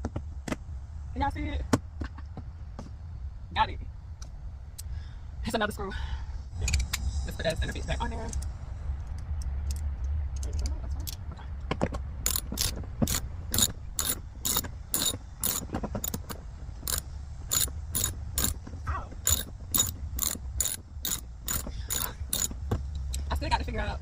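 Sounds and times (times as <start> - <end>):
ratchet wrench clicking: 12.2 - 18.6, 19.2 - 23.2.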